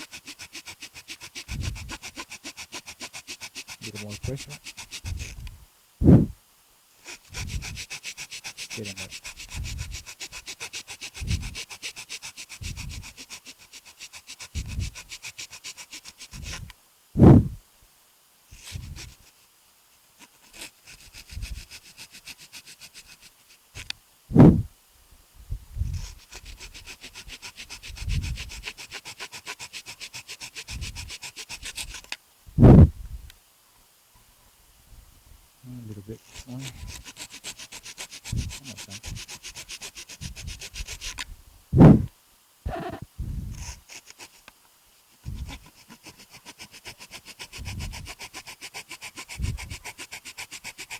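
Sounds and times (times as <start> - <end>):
plastic being rasped by hand: 0.0 - 5.5, 7.1 - 16.7, 36.2 - 42.1, 45.2 - 50.9
breath puffs on microphone: 1.5 - 1.9, 5.0 - 6.4, 9.5 - 10.0, 11.2 - 11.6, 12.6 - 13.0, 16.3 - 17.6, 18.5 - 19.2, 24.3 - 24.7, 25.4 - 26.8, 27.9 - 28.6, 30.7 - 31.1, 32.5 - 33.3, 38.3 - 39.3, 41.7 - 42.1, 42.7 - 43.8, 45.2 - 45.6, 47.6 - 48.0, 49.4 - 49.7.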